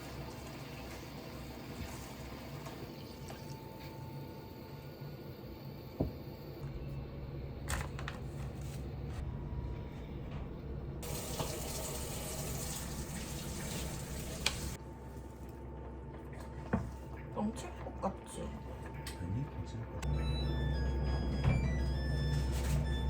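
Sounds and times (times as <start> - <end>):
kitchen tap running: 0.0 - 3.6, 11.0 - 14.8
low steady hum: 0.0 - 23.0.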